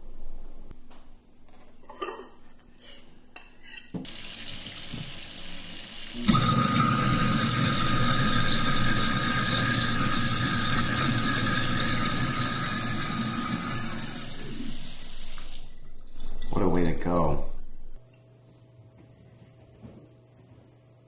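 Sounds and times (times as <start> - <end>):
water running: 4.0 - 18.0.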